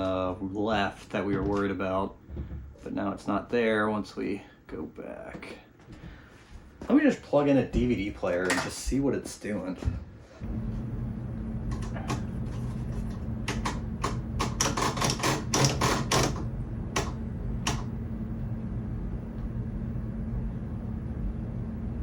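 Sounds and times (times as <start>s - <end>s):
television low hum: 0.0s - 22.0s.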